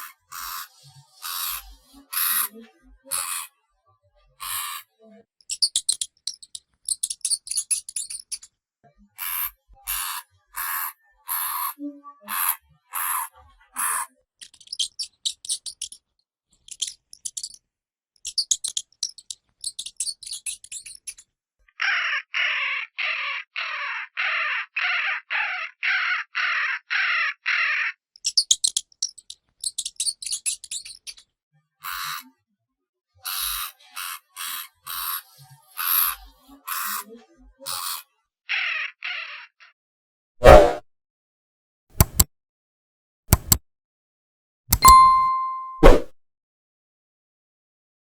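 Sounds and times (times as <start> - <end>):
hamster clicking chatter: 0.0 - 2.5, 3.1 - 3.5, 4.4 - 4.8, 5.5 - 8.4, 9.2 - 16.0, 16.6 - 17.6, 18.2 - 21.2, 28.2 - 31.2, 33.3 - 38.0, 42.0 - 42.3, 43.3 - 43.6
hamster squeaky calls: 0.0 - 3.5, 4.4 - 8.5, 9.2 - 16.0, 16.6 - 17.6, 18.2 - 21.2, 28.2 - 31.2, 31.8 - 32.3, 33.2 - 39.7, 44.7 - 45.9.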